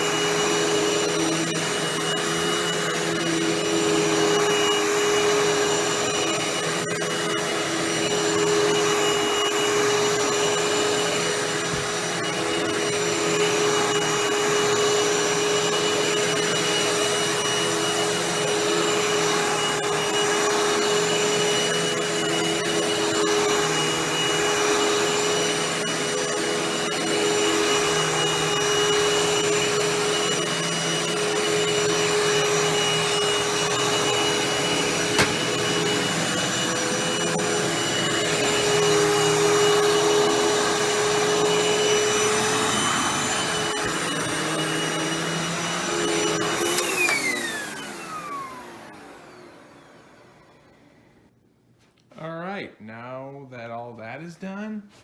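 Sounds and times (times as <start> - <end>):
vacuum cleaner running: 0.0 - 51.3.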